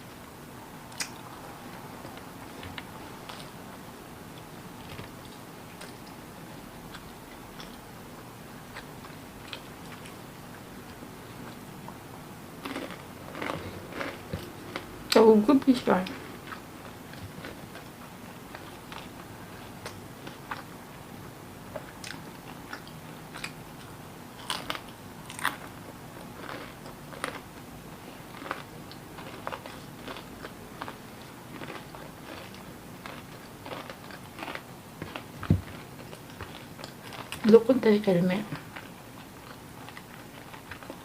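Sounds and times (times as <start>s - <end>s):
person chewing crunchy food: 12.6s - 15.2s, 16.3s - 20.8s, 21.7s - 37.4s, 38.6s - 41.0s.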